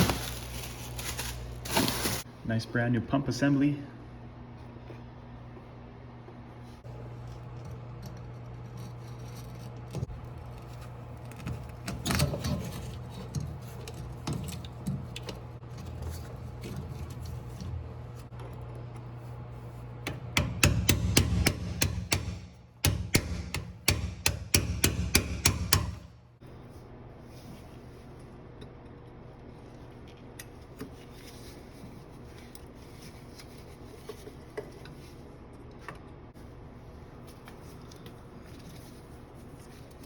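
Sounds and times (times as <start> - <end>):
steady low hum: 0.0 - 40.0
hand tools knocking on metal: 20.1 - 26.1.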